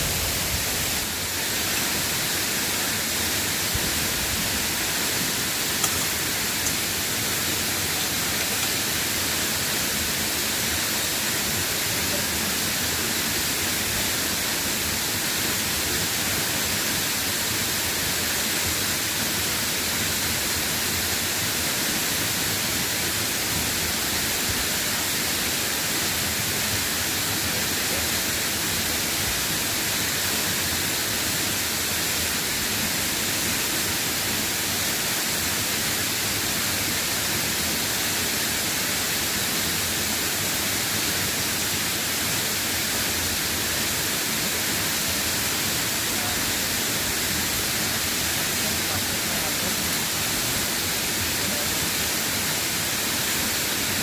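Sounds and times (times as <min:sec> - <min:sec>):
light drizzling rain: 0:00.0 - 0:13.1.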